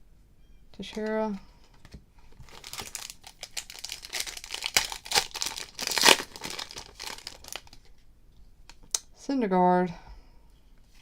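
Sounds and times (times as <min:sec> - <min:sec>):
wrapper crinkling and tearing: 0:02.4 - 0:07.9.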